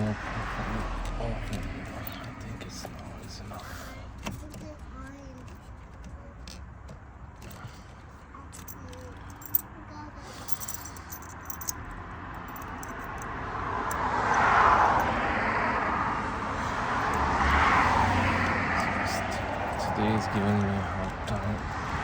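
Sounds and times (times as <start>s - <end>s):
passing vehicle: 0.0s - 5.0s, 10.4s - 22.0s
light metallic clicks and clinks: 8.5s - 9.7s, 10.4s - 15.1s.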